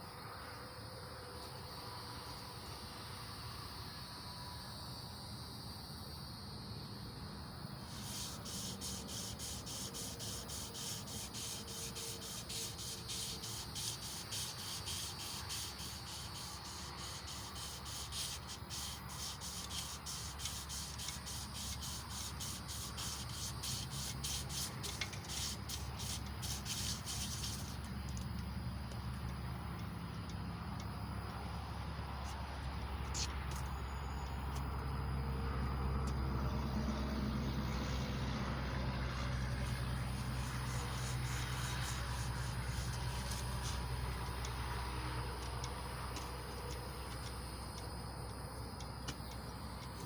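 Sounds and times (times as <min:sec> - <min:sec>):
cricket chirping: 0:00.0 - 0:50.0
emery cloth rasping on metal: 0:07.9 - 0:27.9, 0:40.3 - 0:43.9.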